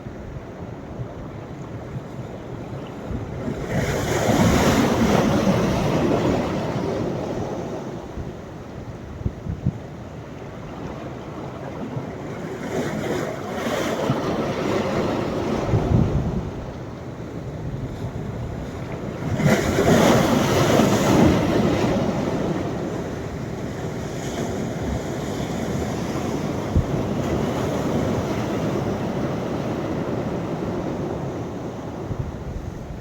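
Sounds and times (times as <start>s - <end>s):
wind buffeting microphone: 0.0s - 11.9s, 12.9s - 33.0s
waves breaking on a beach: 0.0s - 33.0s.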